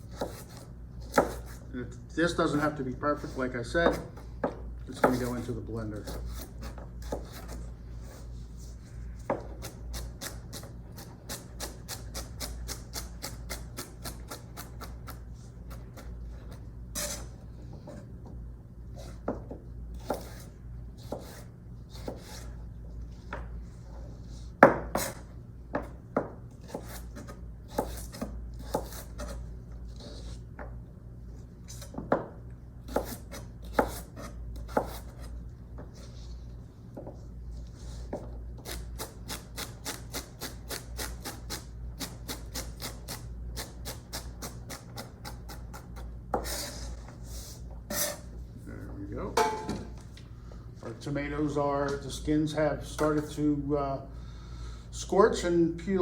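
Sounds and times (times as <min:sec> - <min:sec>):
knife chopping on cutting board: 0:00.1 - 0:01.6, 0:03.8 - 0:05.4, 0:06.0 - 0:08.2, 0:09.2 - 0:16.1, 0:19.0 - 0:22.5, 0:24.6 - 0:29.4, 0:31.8 - 0:35.4, 0:38.1 - 0:46.6.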